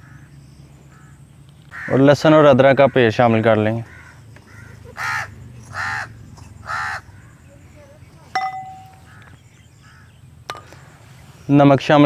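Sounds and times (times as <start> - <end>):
crow cawing: 0.0 - 0.3, 0.9 - 2.1, 3.8 - 7.5, 8.9 - 10.2
metallic clang: 8.4 - 9.1.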